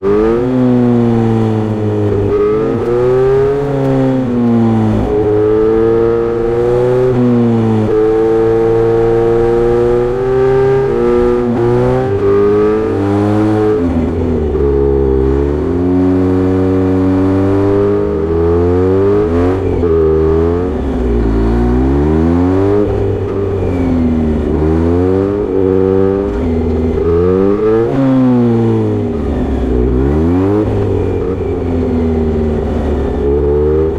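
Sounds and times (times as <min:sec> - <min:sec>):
motorcycle engine revving: 0:00.0 - 0:33.9.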